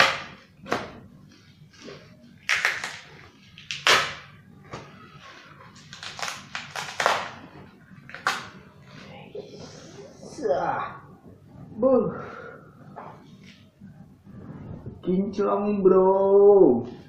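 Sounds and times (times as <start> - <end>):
packaging tearing and crinkling: 1.7 - 4.3, 5.2 - 7.4.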